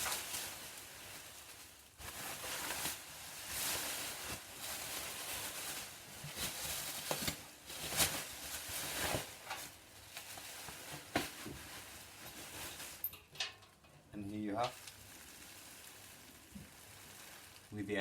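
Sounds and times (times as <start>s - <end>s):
packing material rustling and crinkling: 0.0s - 18.0s
sharp crackles: 14.3s - 18.0s.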